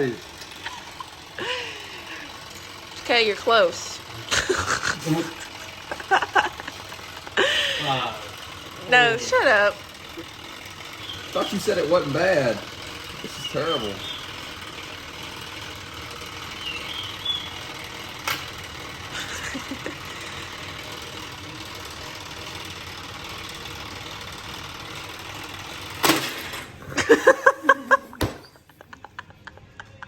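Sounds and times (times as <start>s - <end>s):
background hum: 0.0s - 30.0s
people laughing: 0.6s - 2.4s, 4.2s - 9.5s, 19.0s - 20.6s, 26.8s - 30.0s.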